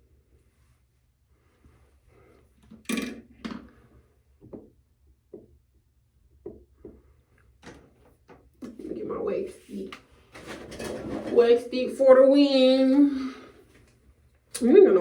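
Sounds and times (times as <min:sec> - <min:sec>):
objects clattering on hard surface: 0:02.6 - 0:03.8, 0:10.3 - 0:11.6.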